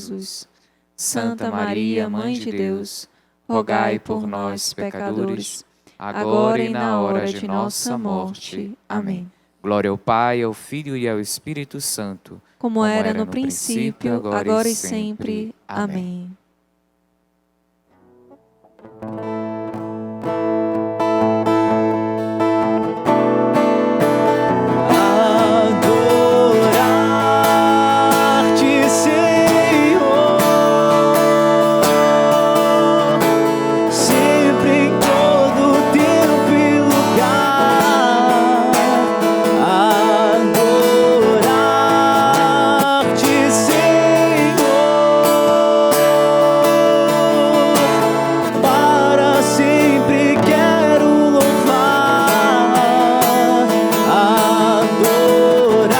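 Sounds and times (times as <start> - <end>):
strummed acoustic guitar: 4.8 - 8.0, 13.0 - 15.3, 17.9 - 55.9
slow devotional music: 19.3 - 55.9.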